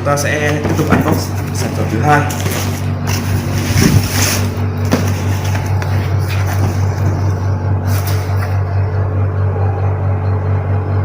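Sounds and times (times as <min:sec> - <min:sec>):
low droning hum: 0:00.0 - 0:11.0
handling clicks and rustles: 0:00.3 - 0:07.2.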